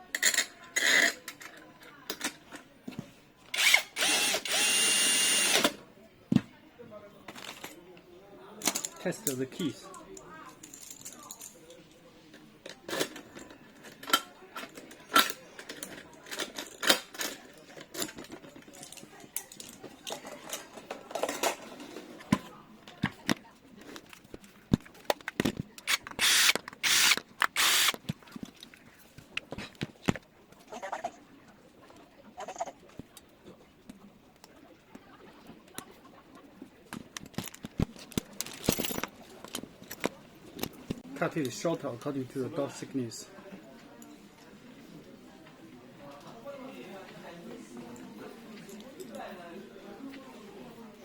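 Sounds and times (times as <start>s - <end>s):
keys being handled: 10.5s - 11.8s, 37.1s - 41.0s.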